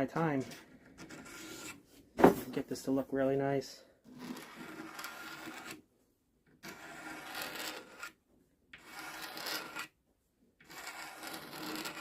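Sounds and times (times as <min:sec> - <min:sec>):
scraper rasping on wood: 0:01.0 - 0:01.8, 0:04.2 - 0:05.8, 0:06.6 - 0:08.2, 0:08.8 - 0:09.9, 0:10.6 - 0:12.0.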